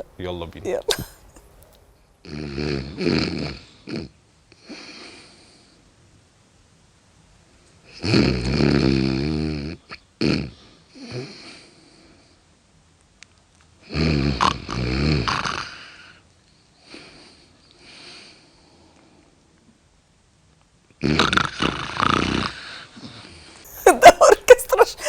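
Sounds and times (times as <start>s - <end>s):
quiet breaths: 1.0s - 6.4s, 10.5s - 12.8s, 15.6s - 19.9s, 22.3s - 23.8s
loud rasping snoring: 2.2s - 4.2s, 7.9s - 11.7s, 13.8s - 16.2s, 21.0s - 23.3s.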